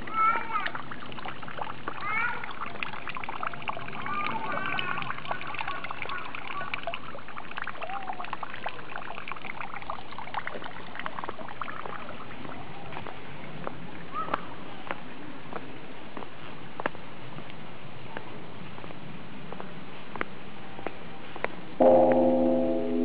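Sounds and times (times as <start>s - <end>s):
water trickling and splashing: 0.0s - 15.5s.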